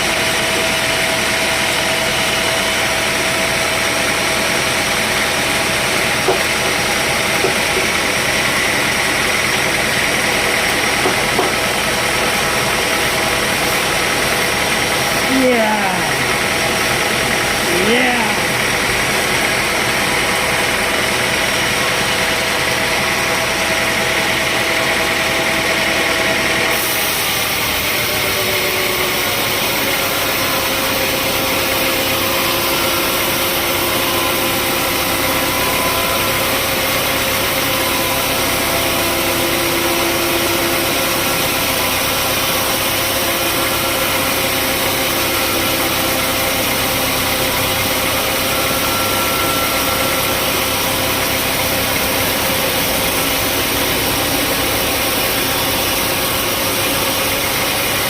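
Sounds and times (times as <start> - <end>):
sawmill machinery engine running: 0.0 - 58.0
wavering pitched tones: 44.9 - 56.3.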